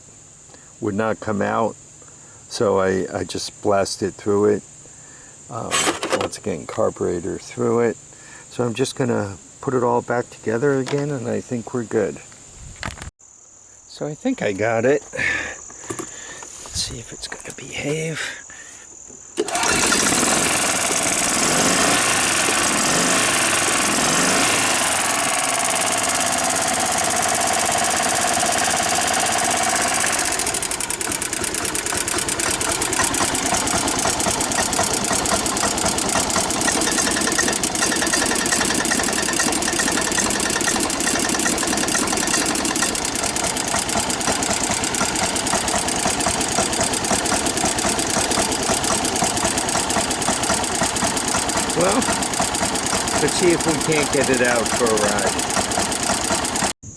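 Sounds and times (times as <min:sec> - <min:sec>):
engine cranking and running: 0:19.4 - 0:56.8.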